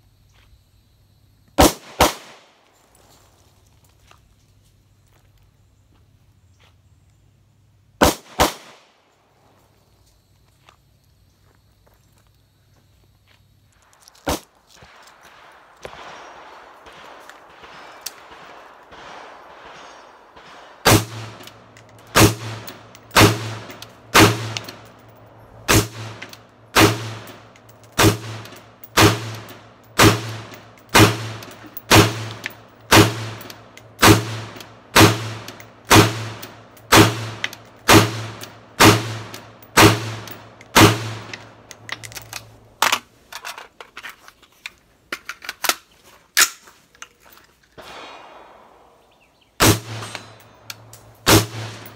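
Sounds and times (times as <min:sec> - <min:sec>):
pistol shots: 0:01.6 - 0:02.5, 0:08.0 - 0:08.9, 0:14.2 - 0:41.7, 0:47.8 - 0:51.9.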